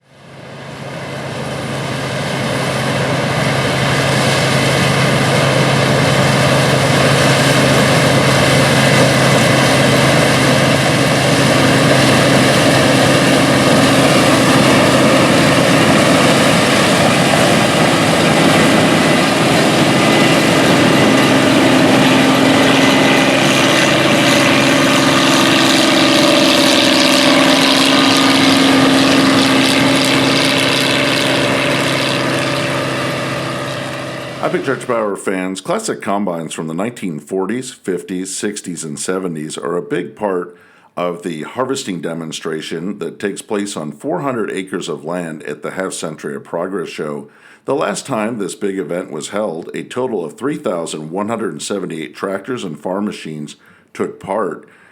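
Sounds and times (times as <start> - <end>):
combine harvester running: 0.0 - 37.0.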